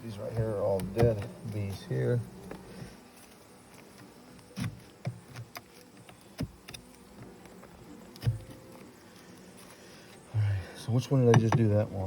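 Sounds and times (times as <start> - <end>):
wooden knocks and clicks: 0.3 - 1.8, 11.3 - 11.8.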